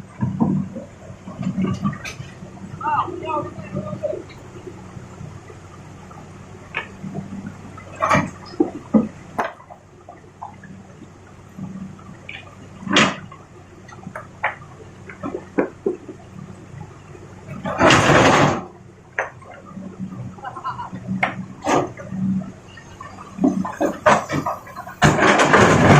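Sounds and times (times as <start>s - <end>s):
faint low engine hum: 0.0s - 25.9s
rock pouring into truck bed: 23.9s - 25.9s.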